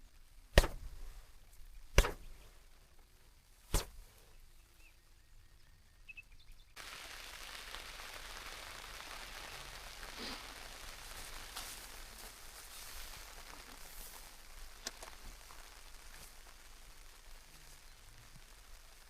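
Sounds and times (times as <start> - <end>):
steady rain falling: 6.8 - 19.0.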